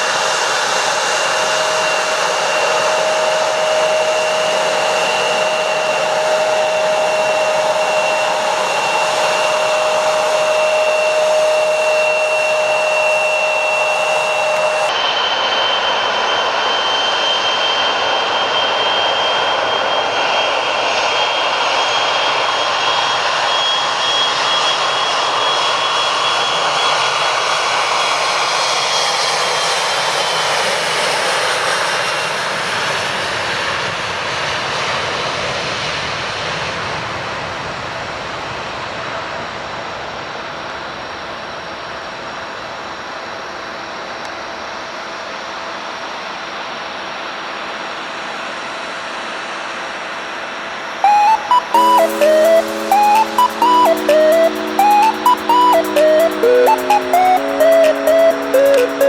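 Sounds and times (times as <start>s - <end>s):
jet engines roaring: 0.0s - 23.4s
high steady engine whine: 0.0s - 36.3s.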